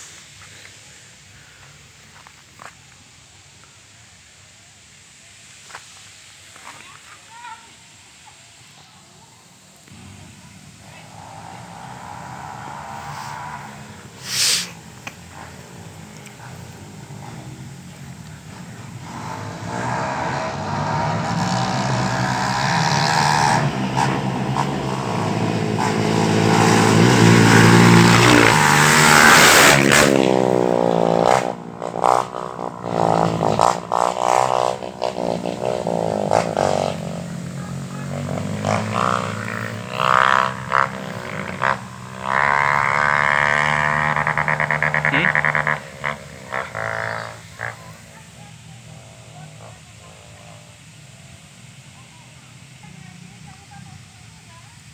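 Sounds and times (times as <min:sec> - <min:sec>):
motorcycle engines passing: 0:09.4 - 0:54.9.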